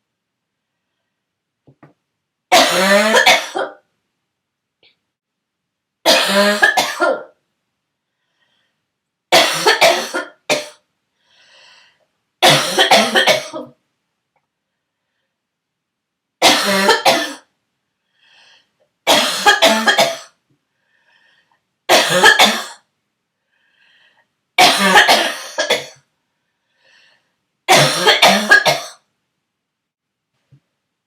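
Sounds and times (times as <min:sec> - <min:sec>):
person barking cough: 0:06.1 - 0:07.3, 0:27.7 - 0:29.0
faint breaths: 0:08.0 - 0:09.0, 0:11.1 - 0:12.2, 0:14.6 - 0:15.6, 0:17.9 - 0:18.9, 0:20.6 - 0:21.8, 0:23.3 - 0:24.5, 0:26.1 - 0:27.5.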